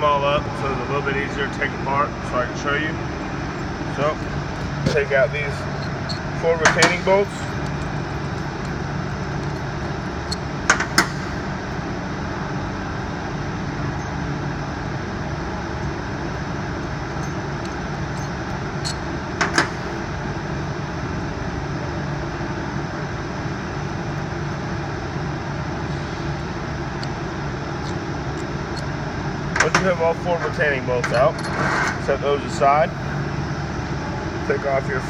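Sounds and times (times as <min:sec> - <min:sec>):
steady background hum: 0:00.0 - 0:35.0
sharp metallic clinks of bolts: 0:03.5 - 0:11.9, 0:15.7 - 0:20.1.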